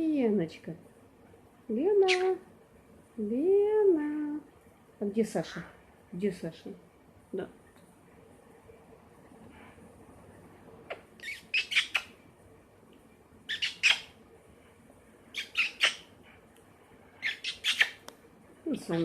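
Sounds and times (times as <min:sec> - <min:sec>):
parrot squawking: 0:02.1 - 0:02.3, 0:05.4 - 0:05.8, 0:11.2 - 0:12.1, 0:13.5 - 0:14.1, 0:15.3 - 0:16.1, 0:17.2 - 0:18.0.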